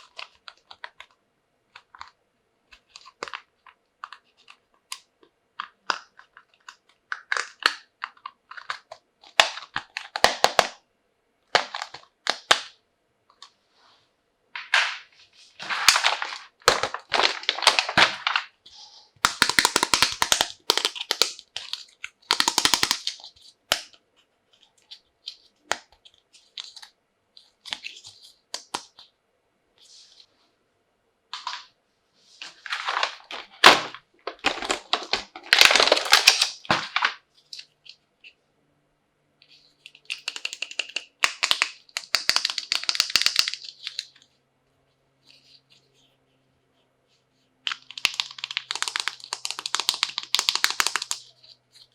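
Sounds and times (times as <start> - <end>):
plastic packaging crackling: 14.6 - 18.6, 32.4 - 37.7, 40.0 - 44.1, 47.7 - 51.9.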